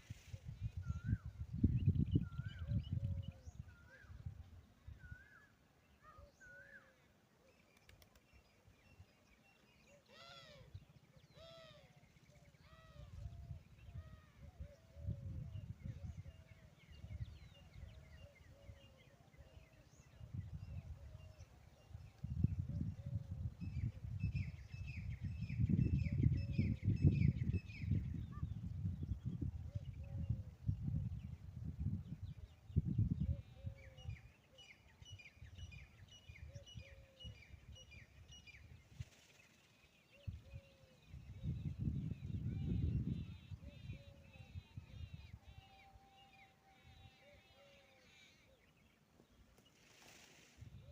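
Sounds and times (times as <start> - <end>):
lower arched bird calls: 9.8 - 19.9, 40.1 - 50.0.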